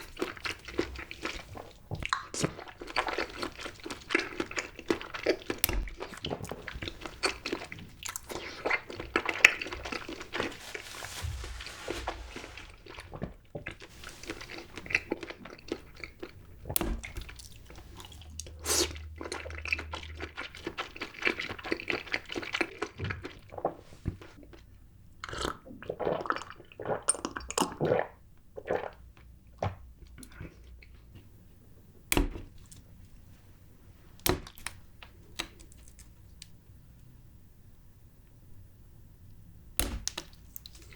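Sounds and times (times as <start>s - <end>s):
wet squishy chewing: 12.9s - 24.4s.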